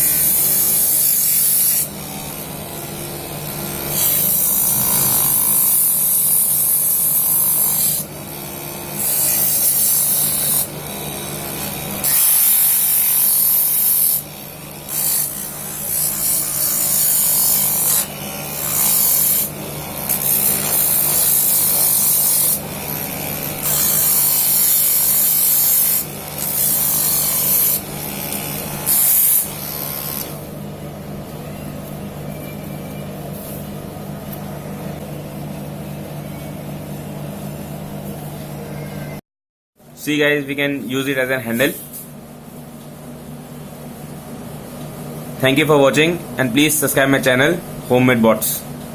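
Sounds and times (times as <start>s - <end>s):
lathe motor humming: 0.0s - 30.7s.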